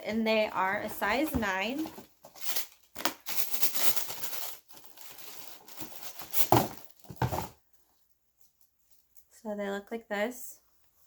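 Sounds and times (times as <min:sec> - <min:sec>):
paper rustling and crinkling: 0:00.1 - 0:07.5.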